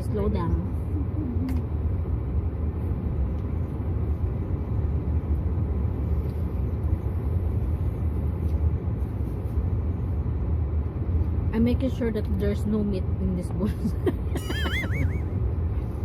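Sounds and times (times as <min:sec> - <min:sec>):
car cabin rumble: 0:14.3 - 0:15.4.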